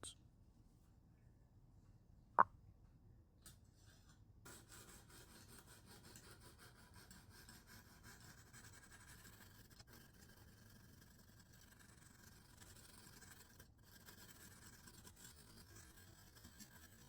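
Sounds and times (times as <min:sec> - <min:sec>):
sharpening stone rasping on knife: 0:04.8 - 0:17.0.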